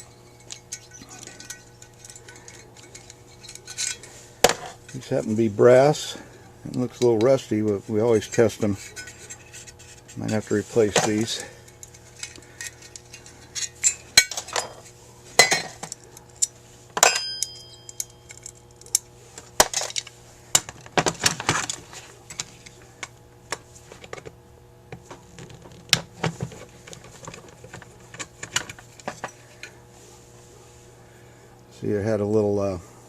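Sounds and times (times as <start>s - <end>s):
small metal parts clinking: 0.0s - 5.3s, 6.0s - 19.0s.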